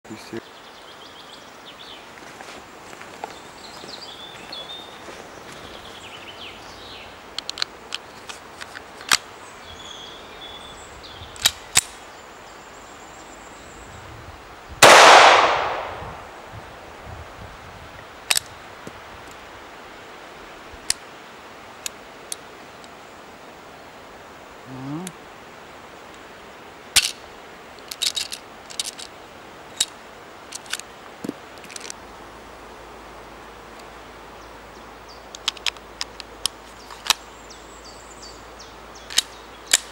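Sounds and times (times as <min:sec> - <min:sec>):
pistol handling clicks and snaps: 0:07.4 - 0:08.0, 0:08.6 - 0:09.3, 0:11.4 - 0:12.0, 0:14.8 - 0:16.0, 0:18.3 - 0:18.5, 0:27.0 - 0:27.2, 0:35.4 - 0:37.2, 0:39.1 - 0:39.9
pistol metallic clicks: 0:11.4 - 0:12.0, 0:14.8 - 0:16.3, 0:39.1 - 0:39.9
loud gunshot report: 0:14.8 - 0:16.5.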